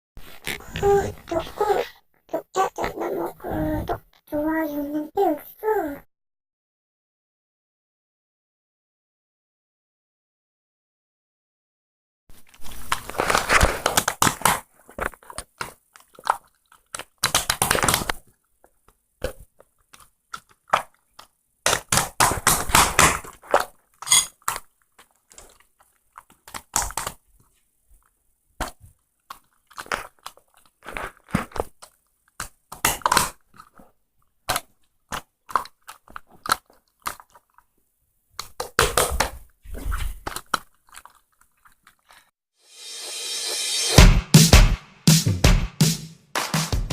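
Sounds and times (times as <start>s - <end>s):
crunching and crinkling: 12.3s - 42.3s.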